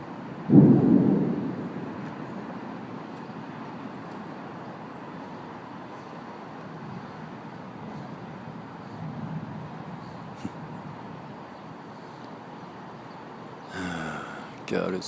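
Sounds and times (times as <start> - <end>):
storm wind hissing: 0.0 - 3.6, 6.7 - 13.0
thunder clap: 0.5 - 2.6.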